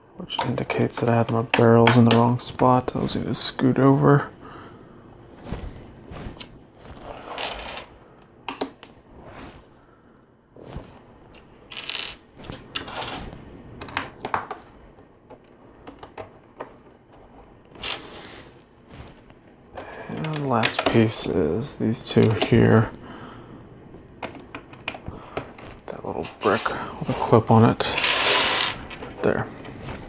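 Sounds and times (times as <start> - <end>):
plastic rattly scrapes: 27.8 - 29.2.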